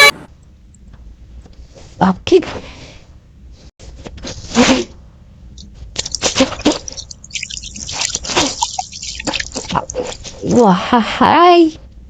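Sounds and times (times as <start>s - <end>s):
scrubbing plastic toy: 5.6s - 10.6s
water splashing: 6.0s - 10.6s.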